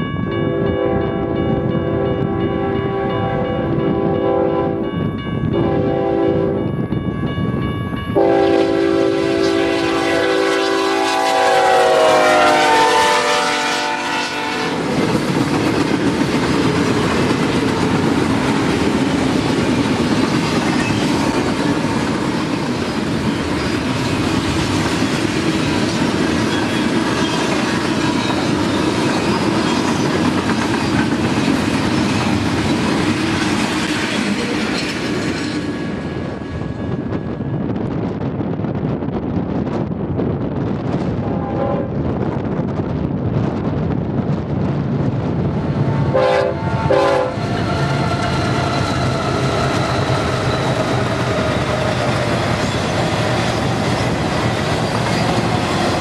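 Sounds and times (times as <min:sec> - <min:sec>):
train cars rumbling and clacking: 0:00.0 - 0:56.0
locomotive air horn blast: 0:05.6 - 0:06.6, 0:08.2 - 0:14.9, 0:41.3 - 0:42.0, 0:46.1 - 0:47.4.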